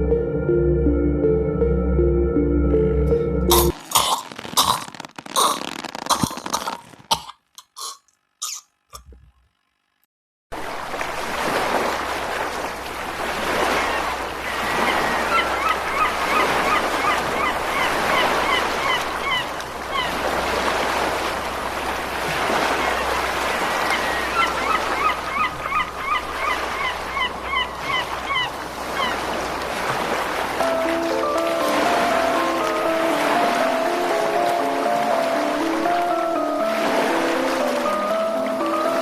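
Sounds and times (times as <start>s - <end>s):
surf washing in: 10.6s - 39.0s.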